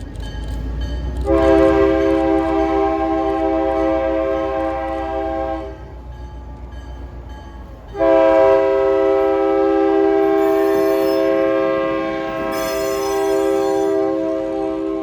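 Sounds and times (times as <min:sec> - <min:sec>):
locomotive horn blasts: 0:01.2 - 0:06.0, 0:07.9 - 0:15.0.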